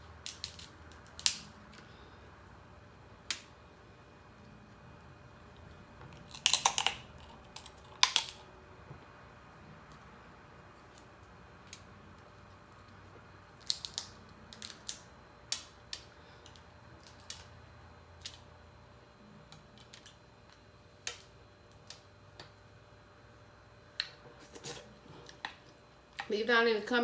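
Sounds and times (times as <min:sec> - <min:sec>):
crab shell cracking: 0:00.2 - 0:01.8, 0:06.1 - 0:08.5, 0:13.6 - 0:17.5.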